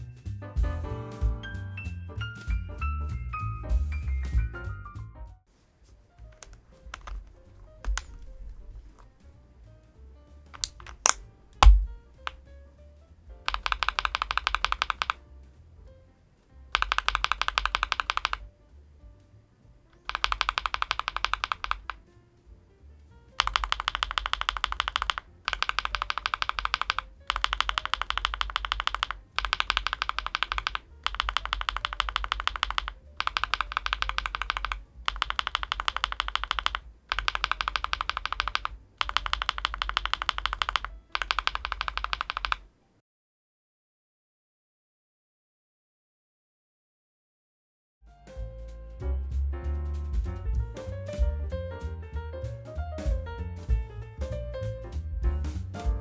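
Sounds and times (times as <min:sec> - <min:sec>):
mechanical keyboard typing: 0:06.2 - 0:09.3, 0:10.6 - 0:12.4, 0:13.5 - 0:15.2, 0:16.7 - 0:18.5, 0:20.0 - 0:22.2, 0:23.4 - 0:42.7.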